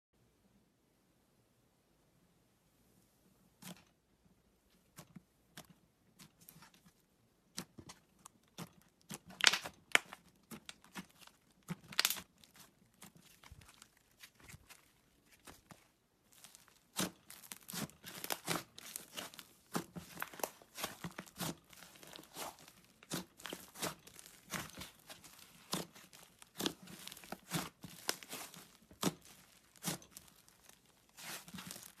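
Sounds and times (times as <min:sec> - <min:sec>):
slime crackling and popping: 0:07.4 - 0:32.0.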